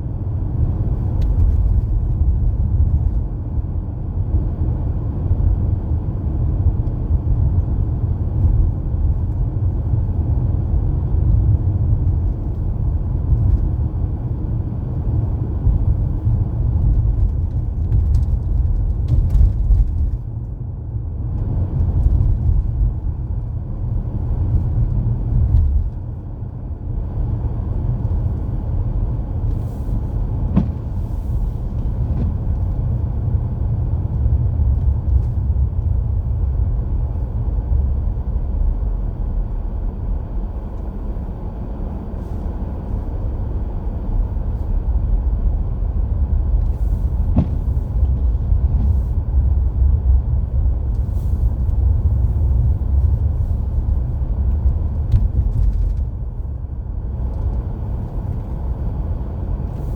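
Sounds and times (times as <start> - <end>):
car driving on snowy road: 0.0 - 59.9.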